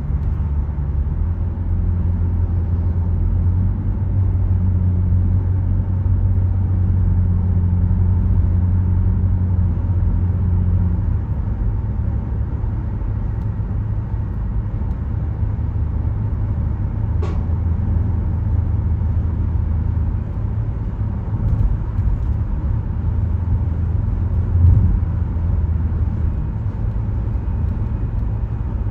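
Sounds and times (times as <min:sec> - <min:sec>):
engine and tyre rumble: 0:00.0 - 0:28.9
short sharp click: 0:17.2 - 0:17.5
low thump: 0:24.6 - 0:25.3.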